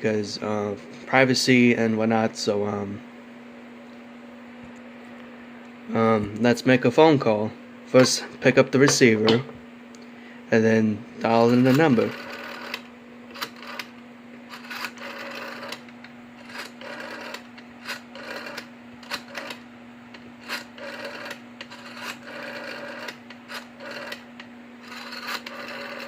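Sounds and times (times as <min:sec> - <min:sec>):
steady low hum: 0:00.0 - 0:26.0
rotary phone dial whirring clicks: 0:11.4 - 0:26.0.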